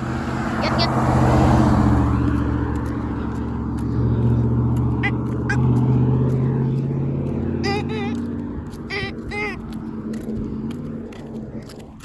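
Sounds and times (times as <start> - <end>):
car passing: 0.0 - 12.0
low engine hum: 0.0 - 12.0.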